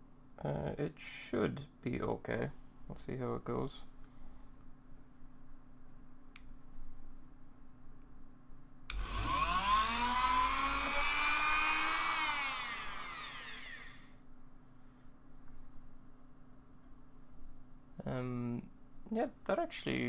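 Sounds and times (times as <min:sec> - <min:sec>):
rotary tool drilling whine: 0:08.9 - 0:14.1.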